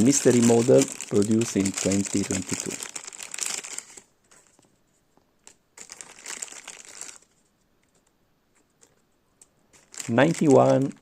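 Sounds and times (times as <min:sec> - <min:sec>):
plastic bag crinkling: 0:00.0 - 0:04.7, 0:05.4 - 0:07.4, 0:09.7 - 0:11.0.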